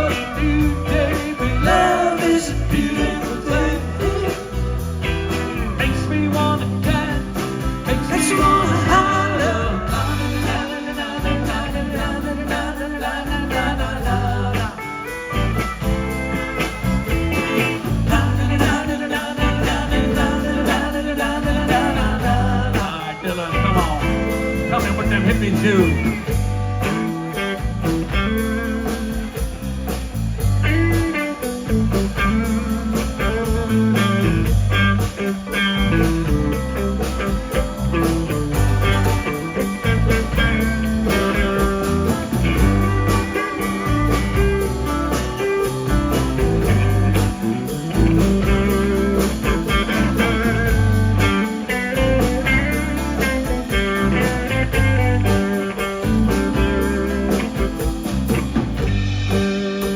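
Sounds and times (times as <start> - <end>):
blues-rock band playing: 0.0 - 59.9
lead guitar solo: 14.7 - 18.0, 22.9 - 29.6, 30.6 - 59.9.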